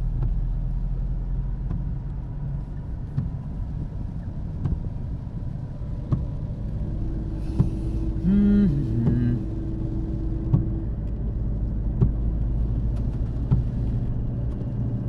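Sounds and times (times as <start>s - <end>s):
car engine and tyres rumbling: 0.0s - 15.0s
steady tone: 6.8s - 12.0s.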